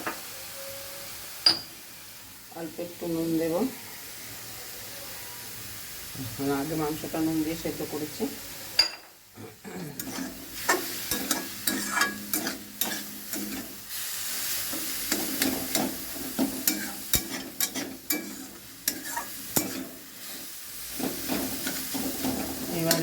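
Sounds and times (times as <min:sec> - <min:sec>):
chicken sizzling in oil: 0:00.0 - 0:08.8, 0:09.9 - 0:23.0
spatula scraping a pan: 0:09.9 - 0:14.0, 0:14.6 - 0:23.0.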